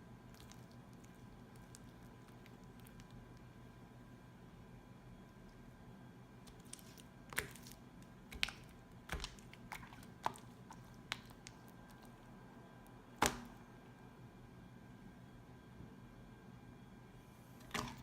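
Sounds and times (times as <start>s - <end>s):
sticky slime clicks and pops: 13.2s - 13.5s.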